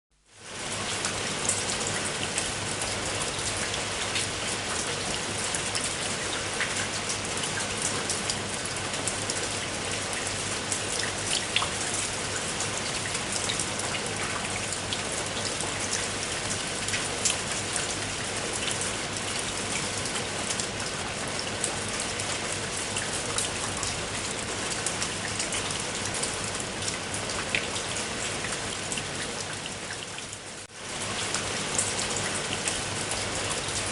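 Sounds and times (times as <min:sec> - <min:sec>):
rain pattering on a surface: 0:00.2 - 0:33.9.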